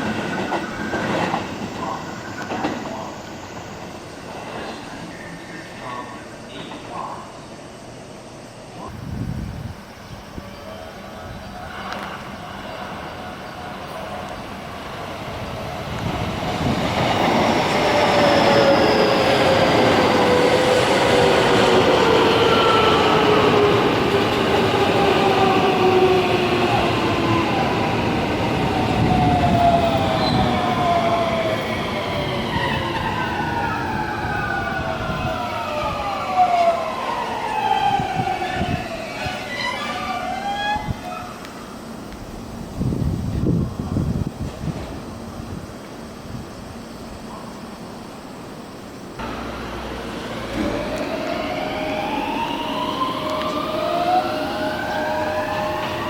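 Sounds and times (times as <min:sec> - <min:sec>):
train wheels rumbling: 0:09.2 - 0:41.5, 0:49.2 - 0:56.0
electric train motor whine: 0:49.2 - 0:56.0.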